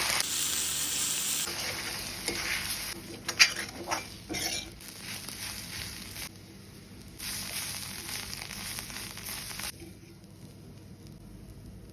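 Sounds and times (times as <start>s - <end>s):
food sizzling in a hot pan: 0.0s - 6.3s, 7.0s - 9.8s.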